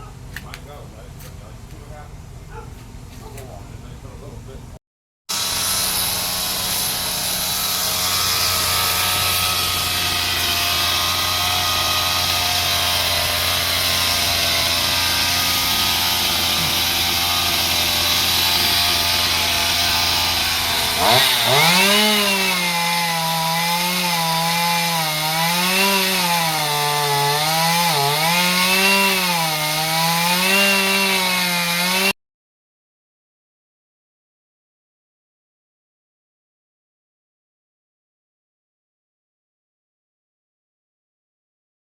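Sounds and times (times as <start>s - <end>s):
chainsaw cutting wood: 5.3s - 32.2s.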